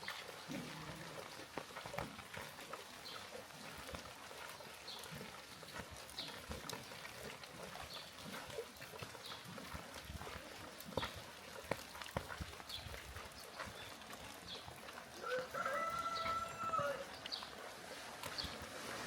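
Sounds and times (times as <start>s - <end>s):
drips and light taps: 0.0s - 18.8s
steady rain: 15.2s - 19.0s.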